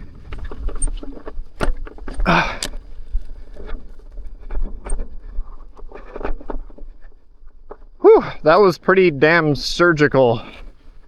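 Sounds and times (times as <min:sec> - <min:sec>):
wind rumble on microphone: 0:00.0 - 0:08.0
unicycle wheel striking rocks: 0:00.0 - 0:11.0.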